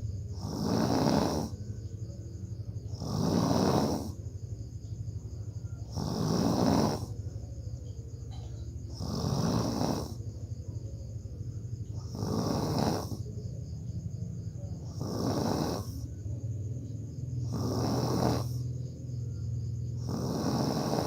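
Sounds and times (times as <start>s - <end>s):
person snoring: 0.4s - 1.6s, 2.9s - 4.2s, 5.8s - 7.2s, 8.9s - 10.2s, 12.0s - 13.3s, 14.8s - 16.1s, 17.4s - 18.8s, 20.0s - 21.0s.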